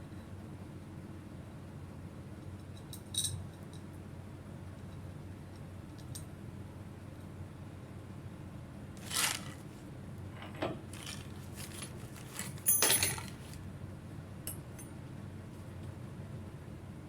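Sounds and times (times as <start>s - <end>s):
metal parts and tools clinking: 9.0s - 9.8s, 10.4s - 13.6s.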